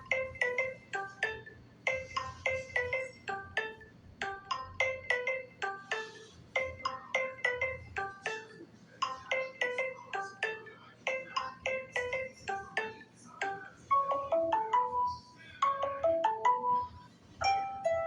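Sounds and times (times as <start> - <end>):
phone ringtone melody: 0.0 - 18.0.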